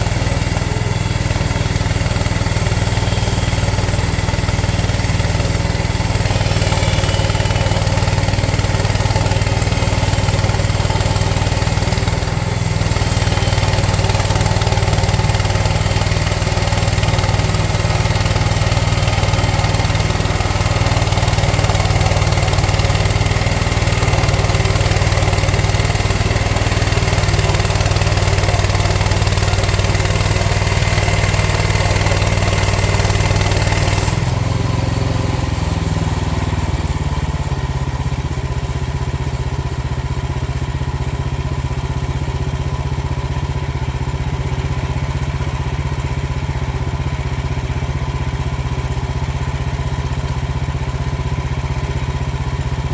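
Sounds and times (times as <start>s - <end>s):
band saw blade hissing through log: 0.0s - 35.3s
gas engine running: 0.0s - 52.9s.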